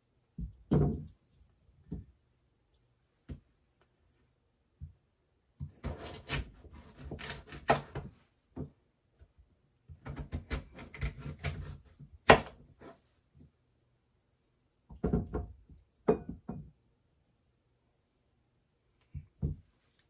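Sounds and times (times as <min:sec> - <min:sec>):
knife chopping on cutting board: 0:05.6 - 0:08.0, 0:10.0 - 0:12.6.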